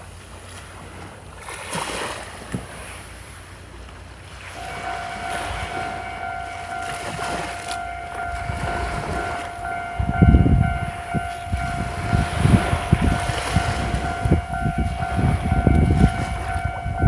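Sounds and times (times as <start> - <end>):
waves washing: 0.0 - 17.0
high droning tone: 4.5 - 17.0
wind buffeting microphone: 4.5 - 17.0.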